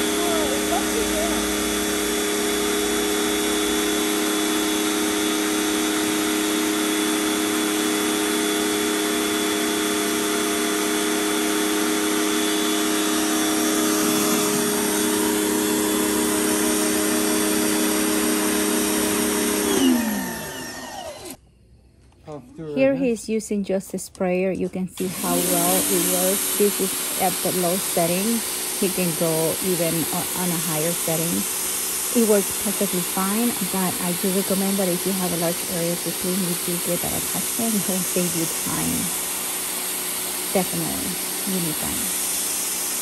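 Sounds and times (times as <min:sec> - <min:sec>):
electric pressure washer running: 0:00.0 - 0:21.4, 0:25.0 - 0:43.0.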